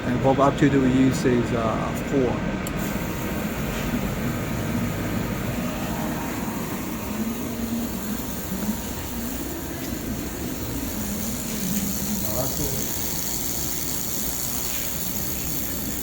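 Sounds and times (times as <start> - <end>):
laser welder cooling fans humming: 0.0 - 16.0.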